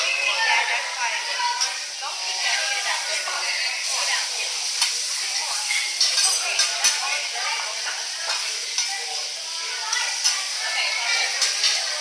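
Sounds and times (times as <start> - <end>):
food sizzling on a griddle: 0.0 - 12.0
people talking: 0.0 - 12.0
metal utensils clacking on plate: 4.7 - 9.3, 9.9 - 12.0.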